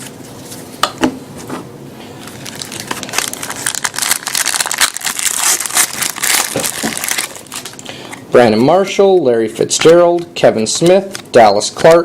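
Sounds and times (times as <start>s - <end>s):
plastic wrapper crinkling: 2.2s - 7.9s.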